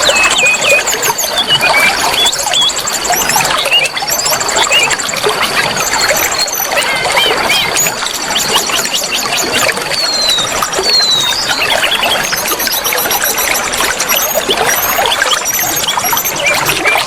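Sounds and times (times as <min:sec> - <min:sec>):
songbird chirps and trills: 0:00.0 - 0:17.0
trickle of running water: 0:00.0 - 0:17.0.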